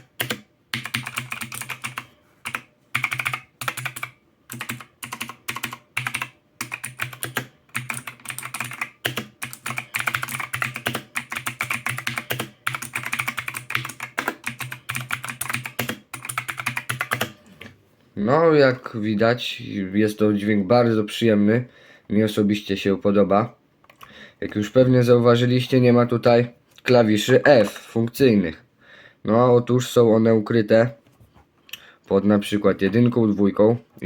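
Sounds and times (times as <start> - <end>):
mechanical keyboard typing: 0.0 - 17.4.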